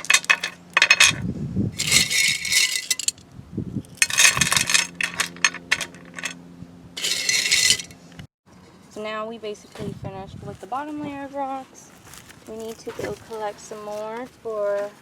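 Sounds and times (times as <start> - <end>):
rocks clinking on clay: 0.0 - 1.2
stones scraping: 0.0 - 1.2, 1.8 - 3.2, 7.0 - 7.9.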